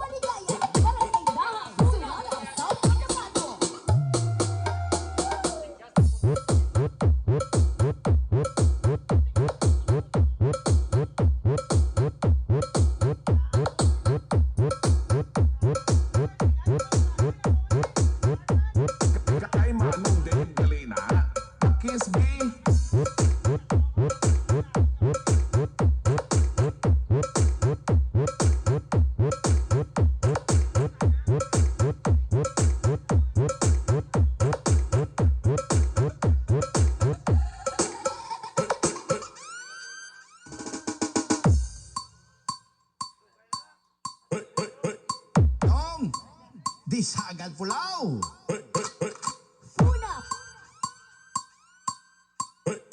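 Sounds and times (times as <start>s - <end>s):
loud electronic dance music: 0.0s - 39.7s, 45.4s - 52.1s
heavy kick drum: 1.8s - 2.2s, 6.0s - 37.6s, 45.4s - 46.2s, 49.8s - 50.2s.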